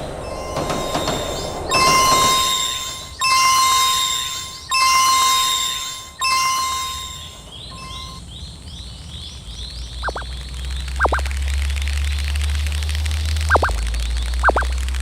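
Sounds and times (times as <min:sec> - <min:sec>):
low hum: 0:00.0 - 0:08.4, 0:09.6 - 0:15.0
bell chime strikes: 0:00.2 - 0:08.2
faint quick chirp: 0:00.2 - 0:08.2.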